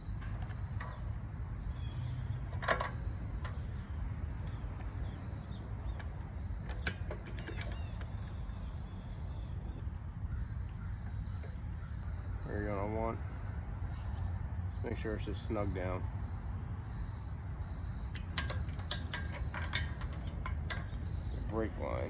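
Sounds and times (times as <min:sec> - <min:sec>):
steady low rumble: 0:07.9 - 0:18.1.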